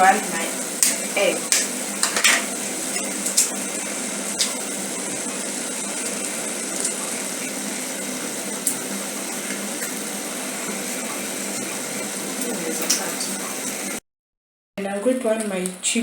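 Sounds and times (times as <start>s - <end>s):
noodles sizzling in a pan: 0.0s - 14.0s
utensil clicking against pan: 0.8s - 2.5s.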